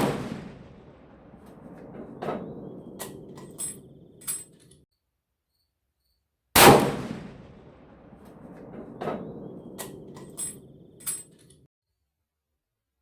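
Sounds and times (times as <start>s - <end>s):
rifle shot: 0.0s - 4.4s, 6.6s - 11.2s.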